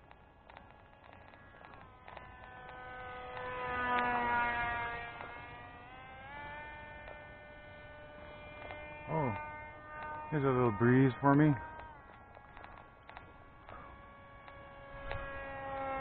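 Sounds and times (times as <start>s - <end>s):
model plane propeller whine: 0.0s - 16.0s.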